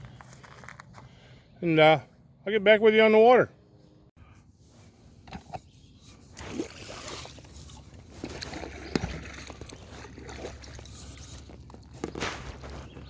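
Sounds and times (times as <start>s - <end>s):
water sloshing around raft: 6.1s - 13.0s.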